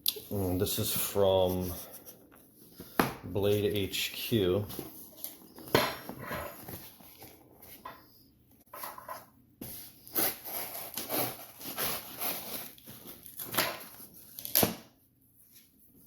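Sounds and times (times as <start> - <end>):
cardboard rustling and tearing: 9.7 - 14.9.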